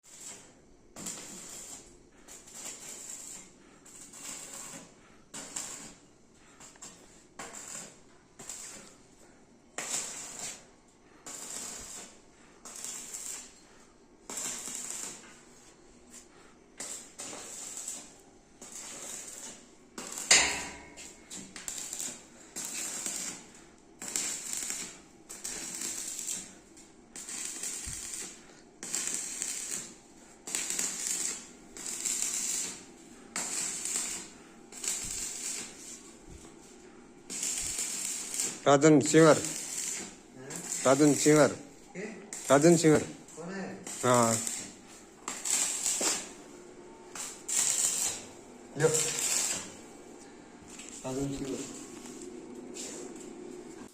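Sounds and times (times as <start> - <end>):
arc welding crackling: 0.0 - 53.9
sharp metal clank: 20.3 - 21.0.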